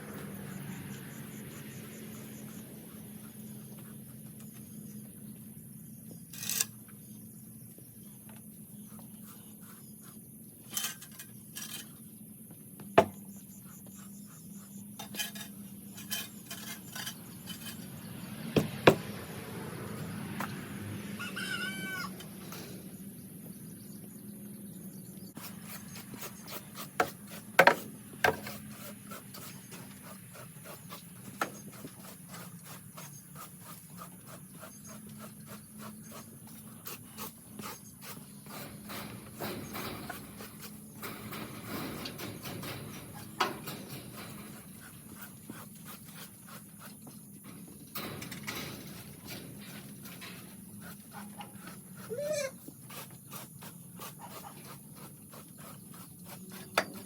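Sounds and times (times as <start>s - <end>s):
knocks and scrapes: 6.1s - 7.0s, 10.6s - 12.1s, 12.8s - 14.0s, 14.6s - 24.2s, 25.2s - 57.0s
short pitched animal call: 21.2s - 22.2s, 52.0s - 52.6s.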